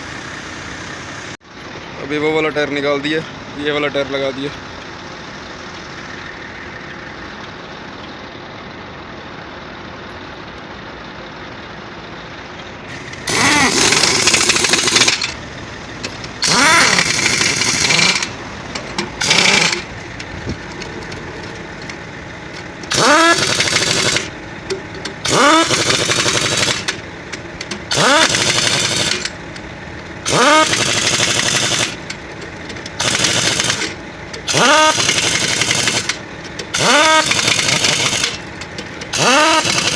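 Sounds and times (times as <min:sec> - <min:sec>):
pneumatic impact wrench: 0:12.9 - 0:15.4, 0:16.0 - 0:22.0, 0:22.6 - 0:29.6, 0:30.2 - 0:39.9.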